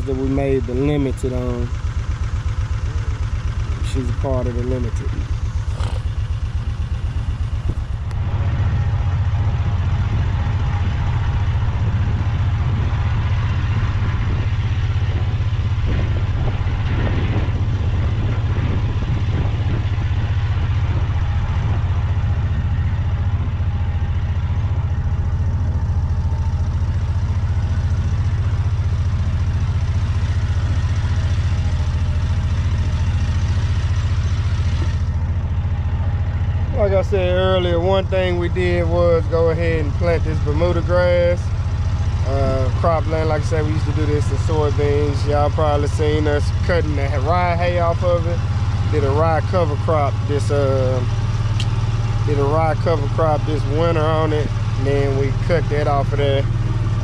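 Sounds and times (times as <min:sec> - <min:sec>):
vehicle engine rumbling: 0:00.0 - 0:57.0.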